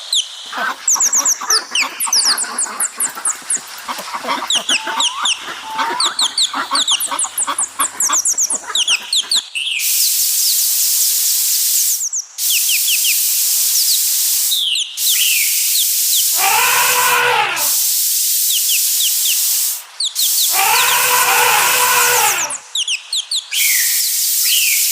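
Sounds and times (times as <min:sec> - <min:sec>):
falling bird chirps: 0:00.2 - 0:24.9
chickens clucking: 0:00.5 - 0:09.5
loud high hiss: 0:03.8 - 0:09.2, 0:09.8 - 0:22.8, 0:23.6 - 0:24.9
animal call rising and falling: 0:04.5 - 0:08.9, 0:16.2 - 0:17.9, 0:20.2 - 0:22.6.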